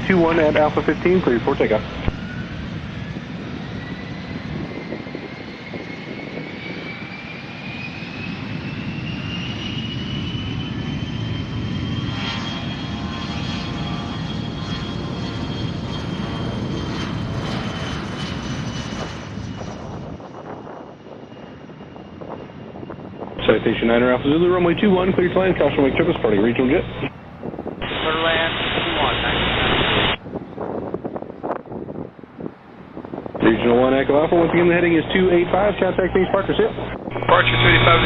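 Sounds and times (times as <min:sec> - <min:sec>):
jet engine whine: 0:00.0 - 0:38.0
jet noise: 0:00.0 - 0:38.0.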